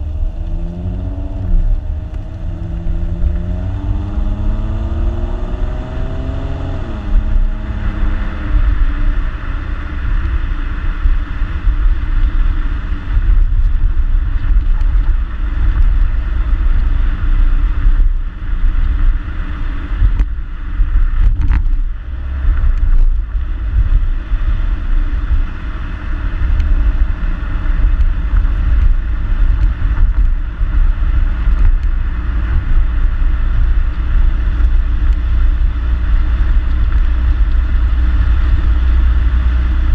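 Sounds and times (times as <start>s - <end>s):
car engine accelerating: 0.0s - 39.9s
road noise: 0.0s - 39.9s.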